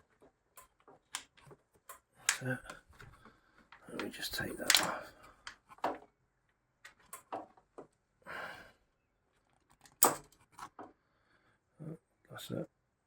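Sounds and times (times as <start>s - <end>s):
small metal parts clicking: 4.0s - 5.6s.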